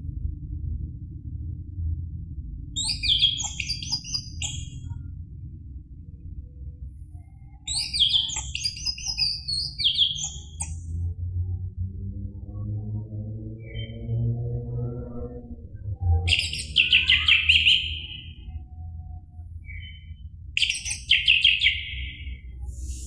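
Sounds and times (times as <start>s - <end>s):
steady low hum: 0.0s - 9.8s, 22.2s - 23.0s
bird whistling song: 2.8s - 5.0s, 7.6s - 10.8s, 16.3s - 23.0s.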